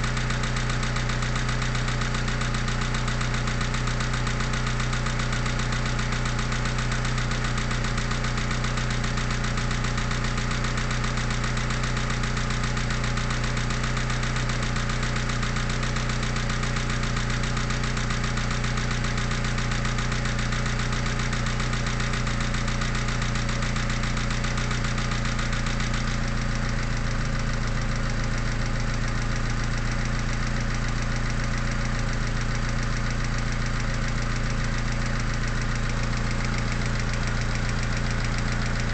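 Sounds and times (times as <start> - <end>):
car engine idling with knock: 0.0 - 38.9.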